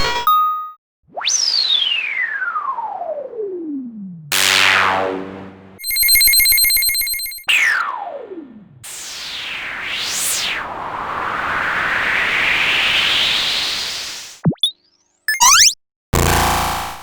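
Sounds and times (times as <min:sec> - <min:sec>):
fast buzzing ring-like tone: 0:05.8 - 0:07.4.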